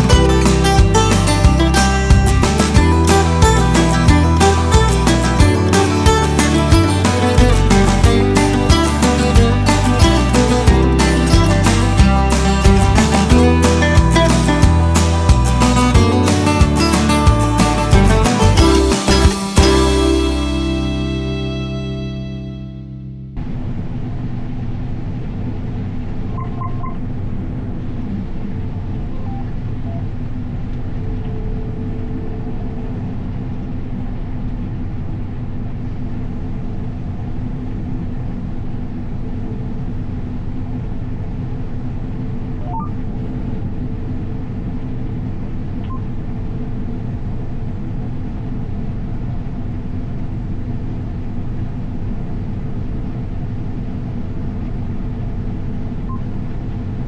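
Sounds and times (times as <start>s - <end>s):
diesel machinery engine drone: 0.0s - 57.0s
short electronic beeps: 42.6s - 43.0s.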